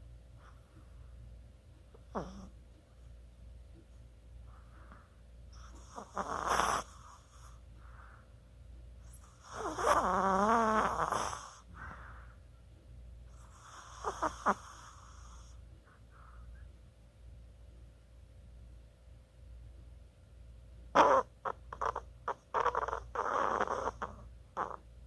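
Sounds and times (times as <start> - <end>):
dog snoring: 2.0 - 2.6, 5.5 - 7.6, 9.0 - 12.1, 13.3 - 15.6, 20.9 - 24.8.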